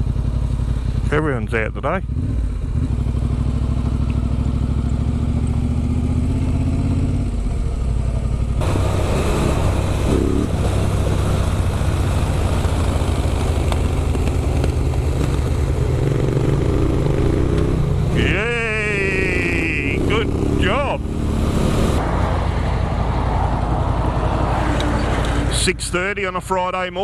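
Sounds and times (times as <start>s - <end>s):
motorcycle engine running: 0.0s - 22.0s
loud rushing noise: 15.8s - 25.5s.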